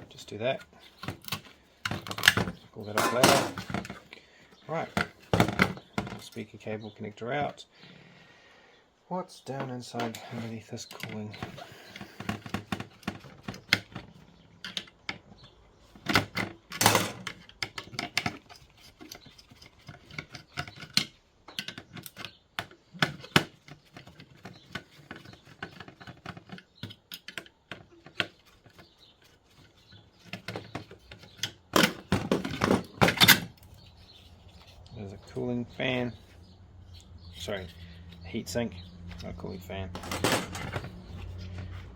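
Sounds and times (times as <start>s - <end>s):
small parts clicking and clattering: 15.9s - 35.0s, 36.9s - 41.9s.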